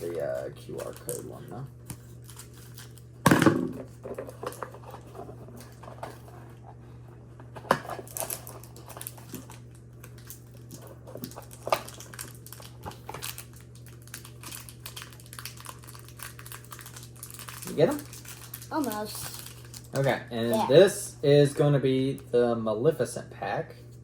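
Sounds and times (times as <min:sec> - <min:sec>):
foil wrapper crinkling: 0:00.0 - 0:03.2, 0:07.9 - 0:20.8.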